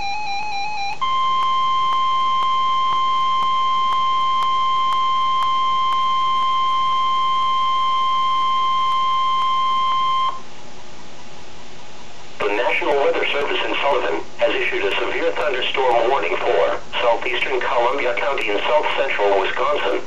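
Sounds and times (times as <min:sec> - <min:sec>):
steady high alarm tone: 0:00.0 - 0:10.4
radio hiss: 0:12.4 - 0:20.0.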